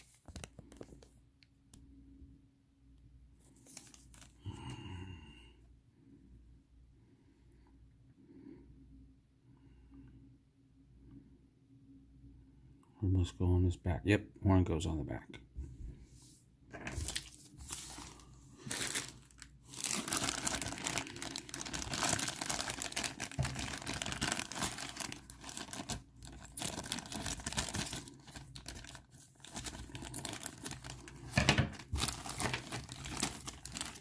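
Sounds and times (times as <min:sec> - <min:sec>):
plastic bags crinkling and tearing: 0:00.0 - 0:01.1, 0:03.5 - 0:04.6, 0:16.8 - 0:34.0.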